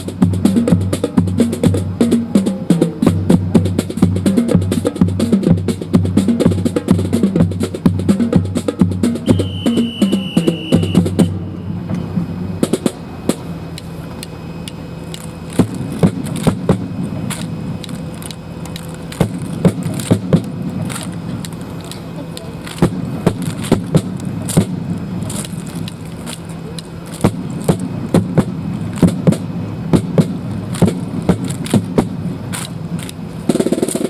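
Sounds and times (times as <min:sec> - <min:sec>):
percussion music with drum beat: 0:00.0 - 0:13.6, 0:15.2 - 0:34.0
whistle blast: 0:09.2 - 0:12.4.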